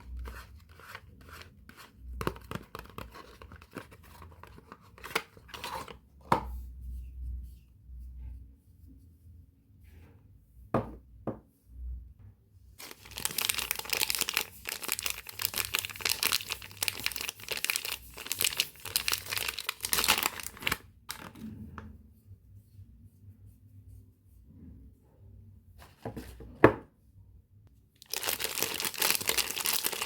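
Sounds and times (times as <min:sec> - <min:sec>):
wrapper crinkling and tearing: 0:12.8 - 0:21.4, 0:28.0 - 0:30.0.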